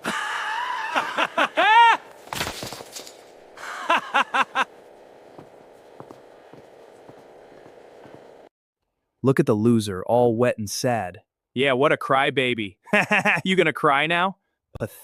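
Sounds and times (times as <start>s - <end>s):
people jeering and laughing: 0.0s - 2.2s, 3.6s - 4.8s.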